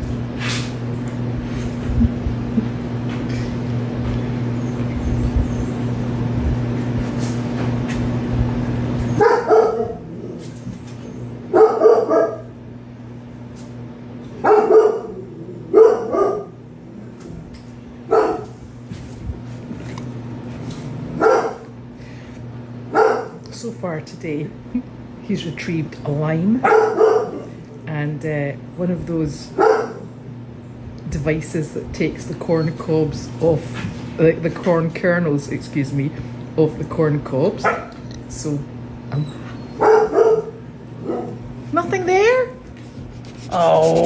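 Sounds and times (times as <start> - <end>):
steady low hum: 0.0 - 44.0
dog barking: 9.2 - 10.1, 11.5 - 12.5, 14.4 - 16.6, 18.1 - 18.6, 21.2 - 21.7, 22.9 - 23.4, 26.6 - 27.5, 29.6 - 30.1, 37.6 - 38.0, 39.8 - 41.4.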